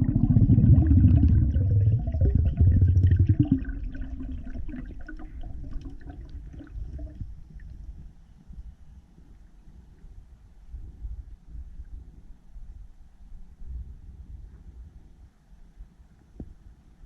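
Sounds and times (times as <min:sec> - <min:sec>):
underwater water gurgling: 0:00.0 - 0:08.0.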